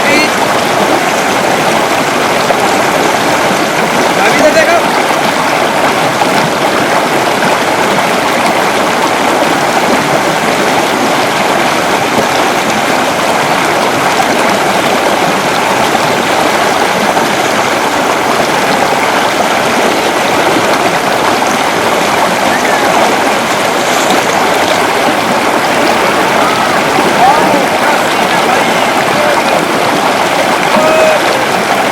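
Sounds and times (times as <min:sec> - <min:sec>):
rushing water: 0:00.0 - 0:31.9.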